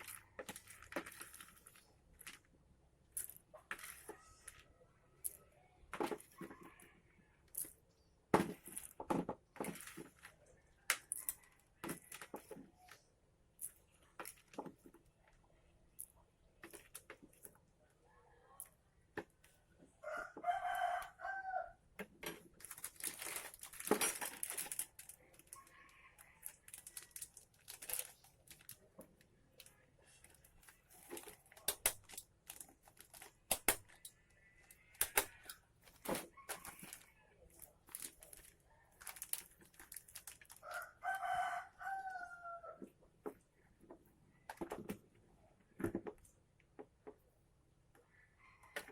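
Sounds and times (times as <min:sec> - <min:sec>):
rooster crowing: 0:20.0 - 0:21.8, 0:40.6 - 0:42.8.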